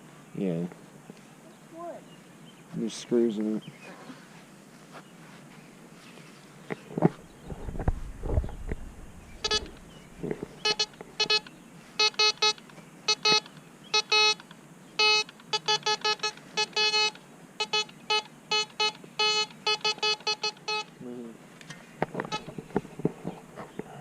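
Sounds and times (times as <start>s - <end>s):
low thumps: 7.0s - 11.2s
metal detector beeping: 7.4s - 21.0s, 22.2s - 22.9s.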